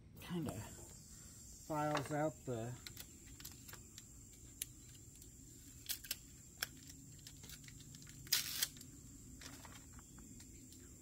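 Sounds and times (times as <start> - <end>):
rustling: 2.8 - 10.9.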